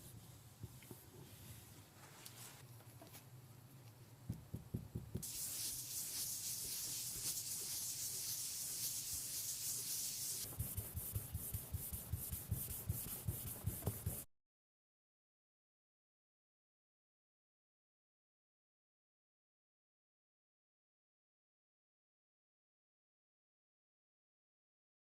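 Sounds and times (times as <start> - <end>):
abrasive rubbing on knife: 5.2 - 10.5.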